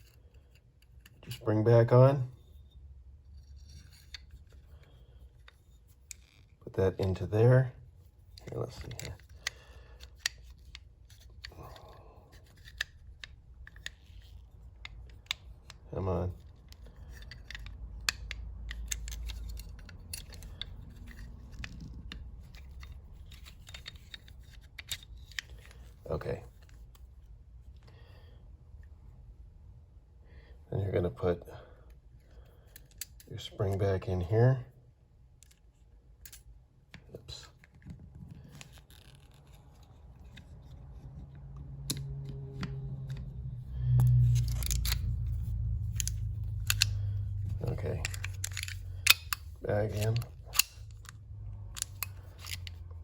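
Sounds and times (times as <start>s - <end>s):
metallic clicks of pistol parts: 3.5s - 6.5s, 8.3s - 27.1s, 32.6s - 33.8s, 36.2s - 37.0s, 38.4s - 53.0s
low handling rumble: 39.6s - 53.0s.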